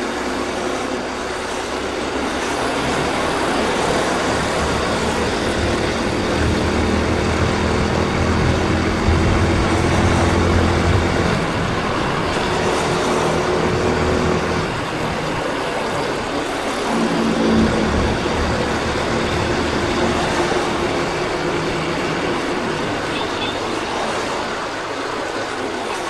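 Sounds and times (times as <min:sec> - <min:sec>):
city traffic: 0:00.0 - 0:26.0
motorcycle engine running: 0:02.2 - 0:15.0
wind rushing: 0:02.9 - 0:15.5.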